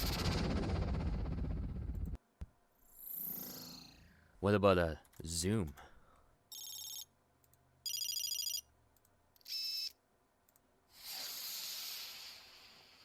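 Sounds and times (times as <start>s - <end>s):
electronic chirp: 6.5s - 7.1s, 7.9s - 8.7s
electronic ringing trills: 7.9s - 8.7s.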